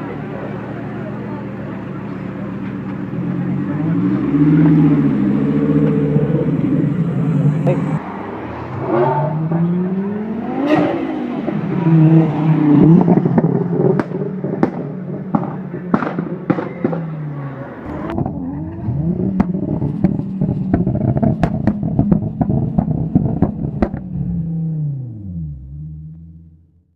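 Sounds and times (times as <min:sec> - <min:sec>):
turbocharged car engine revving: 0:00.0 - 0:26.9
exhaust backfire bangs and pops: 0:12.9 - 0:26.3.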